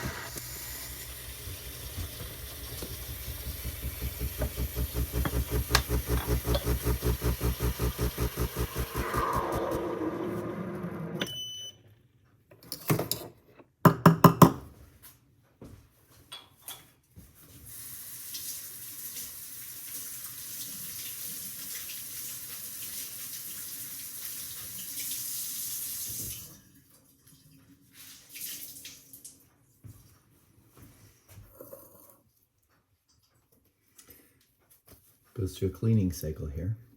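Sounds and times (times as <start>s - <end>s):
steam wand hissing: 0.0s - 9.8s
espresso machine pulsing buzz: 0.0s - 10.9s
short beep: 11.2s - 11.8s.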